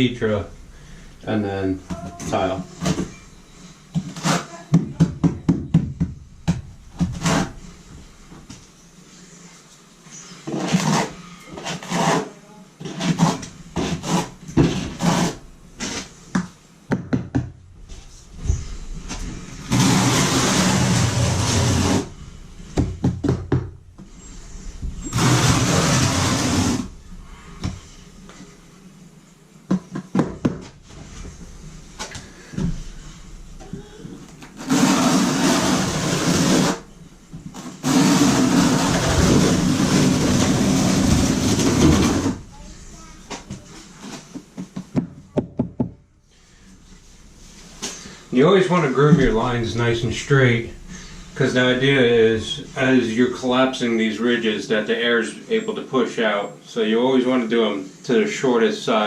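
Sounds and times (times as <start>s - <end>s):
tools knocking and tapping: 16.4s - 17.6s.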